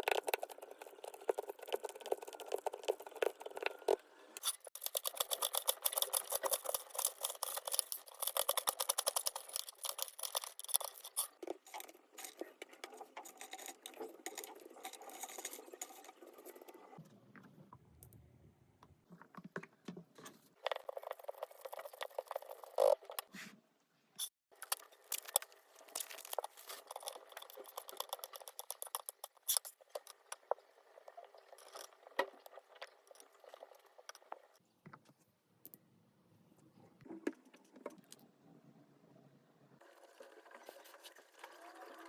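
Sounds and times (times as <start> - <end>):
utensils clicking and scraping: 4.4 - 16.8, 24.2 - 30.2.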